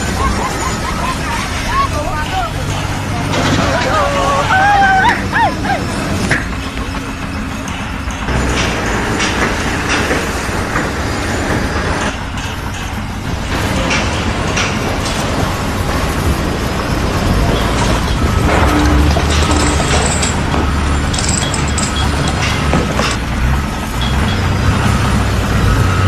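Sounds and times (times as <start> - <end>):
construction machinery rumbling: 0.0 - 26.0
metallic clanks: 6.1 - 24.9.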